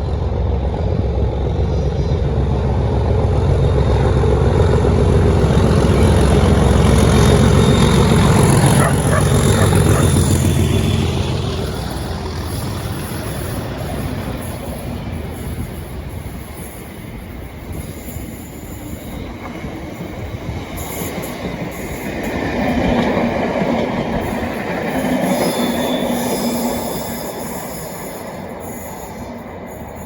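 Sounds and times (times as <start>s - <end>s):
diesel locomotive passing: 0.0s - 30.0s.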